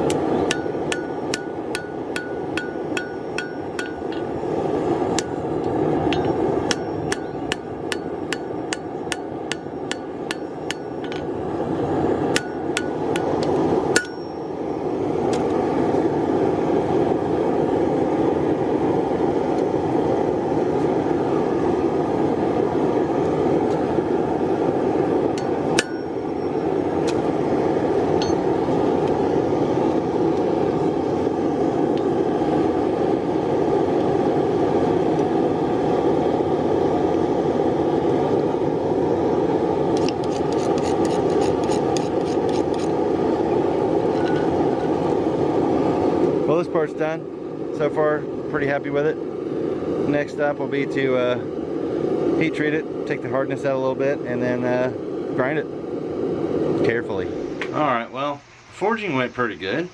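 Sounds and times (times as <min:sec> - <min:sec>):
steady rushing noise: 0:00.0 - 0:59.9
hammer ringing on anvil: 0:00.5 - 0:04.3, 0:06.1 - 0:11.2, 0:12.4 - 0:14.5, 0:25.4 - 0:26.2, 0:28.2 - 0:28.4.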